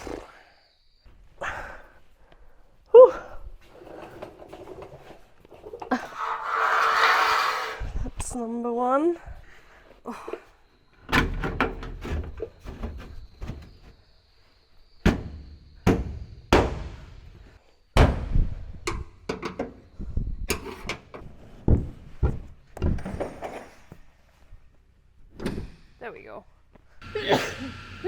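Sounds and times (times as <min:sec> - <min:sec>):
heavy metallic clunks and knocks: 0:15.0 - 0:19.8.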